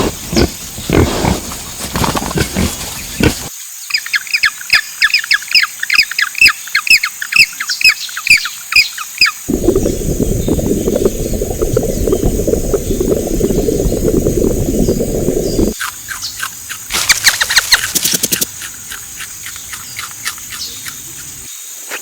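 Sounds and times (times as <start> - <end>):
low rough noise: 9.5 - 15.8.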